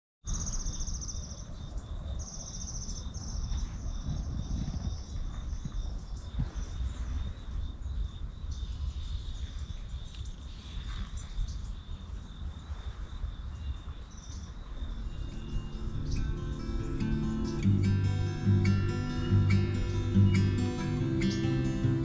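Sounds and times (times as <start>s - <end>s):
bird chirps: 14.2s - 22.0s
acoustic guitar music: 14.9s - 22.0s.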